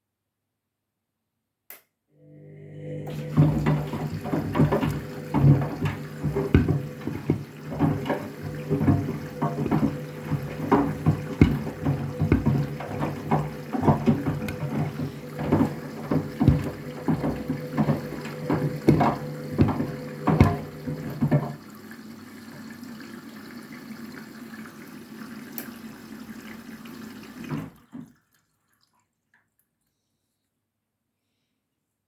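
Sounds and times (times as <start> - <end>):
washing machine drum motor hum: 2.4 - 23.6
water running: 2.6 - 29.1
shoes thudding in drum: 3.2 - 21.6.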